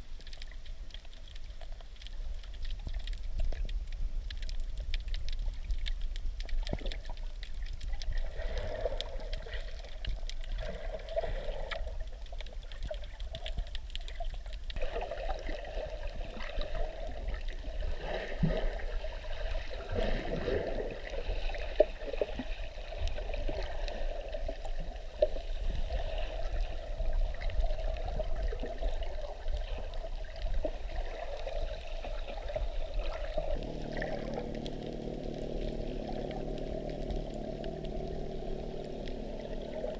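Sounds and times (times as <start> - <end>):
water sloshing underwater: 0.0 - 39.9
engine-like hum: 33.6 - 39.9.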